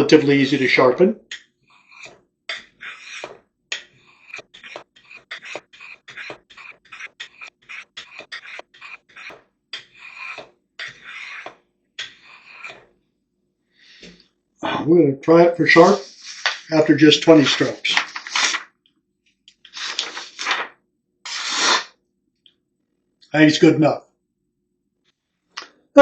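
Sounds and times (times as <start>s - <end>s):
knife scraping across sharpener: 1.7s - 12.9s.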